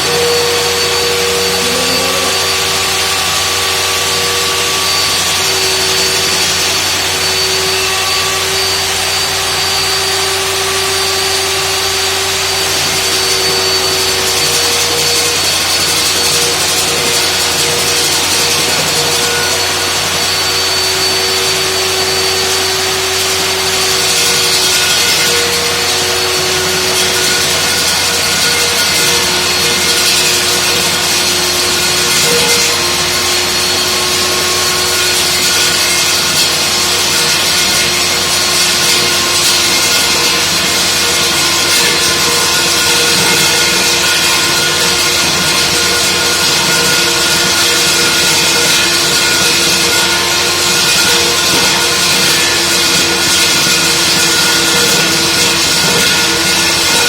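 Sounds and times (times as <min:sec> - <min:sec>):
low hums: 0:00.0 - 0:09.0
core drill grinding: 0:00.0 - 0:57.0
drill high whine: 0:00.0 - 0:57.0.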